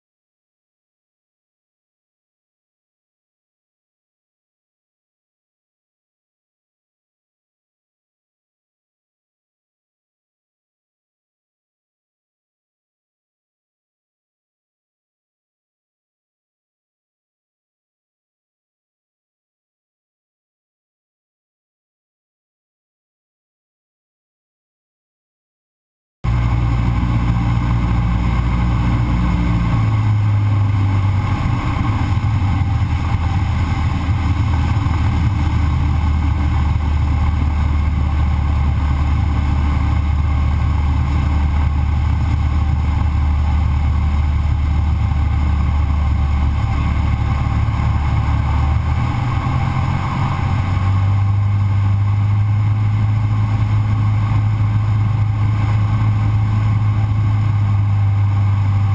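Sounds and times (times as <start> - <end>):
propeller plane engine droning: 26.2 - 58.9.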